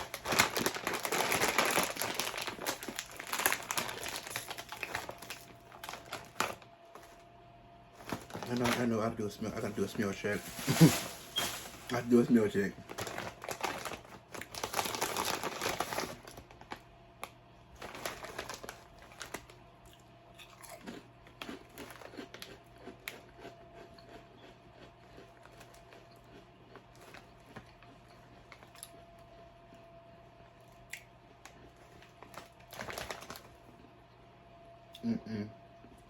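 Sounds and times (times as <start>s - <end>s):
person crunching potato chips: 0.0s - 6.6s, 10.4s - 16.7s, 17.8s - 29.0s
chip bag crinkling: 0.0s - 7.2s, 8.0s - 19.6s, 20.6s - 23.5s, 24.8s - 29.0s, 31.4s - 33.9s.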